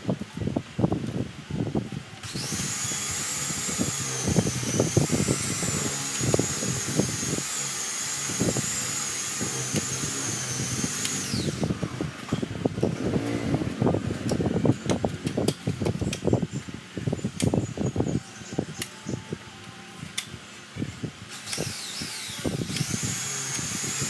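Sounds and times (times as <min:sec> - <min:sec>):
power sander whining: 0:02.2 - 0:16.4, 0:21.2 - 0:24.0.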